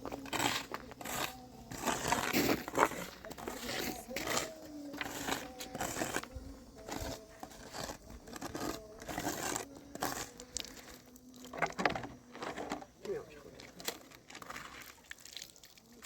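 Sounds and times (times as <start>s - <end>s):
rustling and crinkling: 0.0s - 15.6s
faint steady tone: 0.0s - 16.0s.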